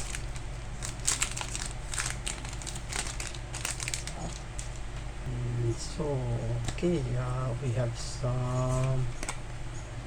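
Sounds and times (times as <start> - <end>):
card packs crinkling and rustling: 0.0 - 5.1, 8.5 - 9.4.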